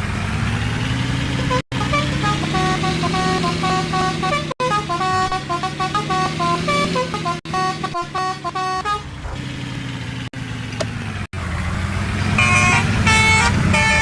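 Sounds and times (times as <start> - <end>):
bus engine running: 0.0 - 14.0
multi-tone bus horn tune: 1.3 - 9.4, 12.3 - 14.0.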